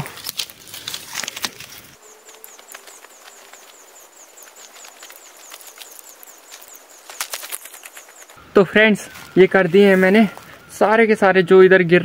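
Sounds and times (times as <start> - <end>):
pine needles crunching: 0.0 - 10.8.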